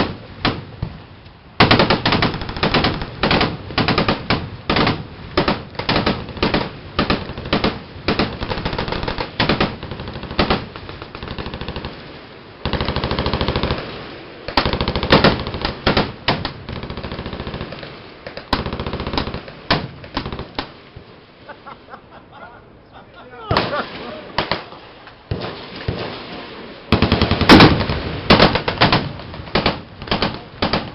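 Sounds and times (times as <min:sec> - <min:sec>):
machine gun rapid fire: 0:01.6 - 0:11.9, 0:12.6 - 0:13.8, 0:14.6 - 0:16.1
gunshot single and burst reports: 0:25.3 - 0:30.9.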